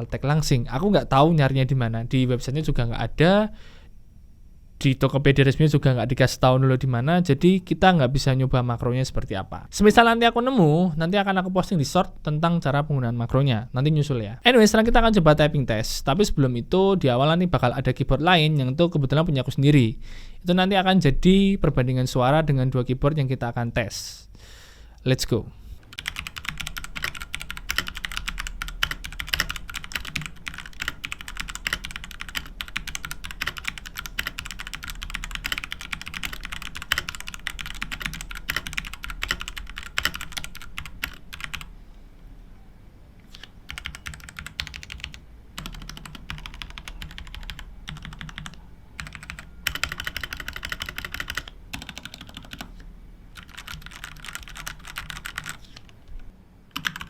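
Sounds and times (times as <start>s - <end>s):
keyboard keys clicking: 25.9s - 41.7s, 43.4s - 52.8s, 53.4s - 56.0s, 56.8s - 57.0s.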